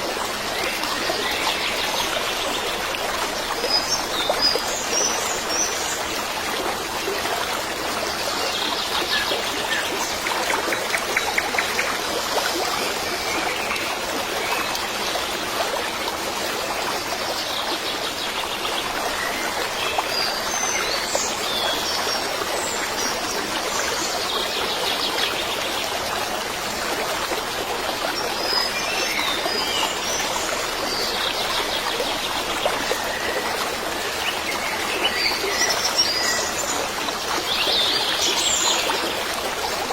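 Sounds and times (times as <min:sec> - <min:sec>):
stream water running: 0:00.0 - 0:39.9.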